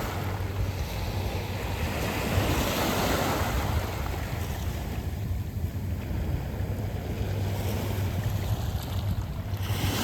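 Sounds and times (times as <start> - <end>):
surf washing over pebbles: 0.0 - 10.0.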